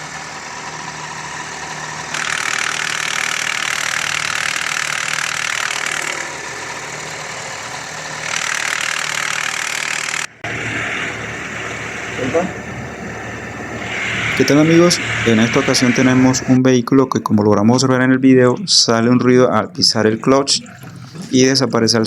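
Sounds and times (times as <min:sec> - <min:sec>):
car engine idling: 0:00.0 - 0:16.6
harsh grinding noise: 0:00.0 - 0:16.7.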